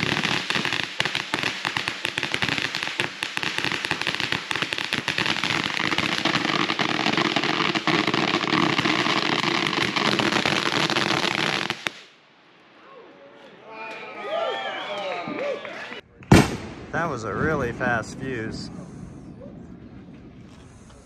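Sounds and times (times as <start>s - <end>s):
fireworks hiss: 0.0s - 12.2s
fireworks crackling: 0.0s - 12.6s, 16.2s - 21.0s.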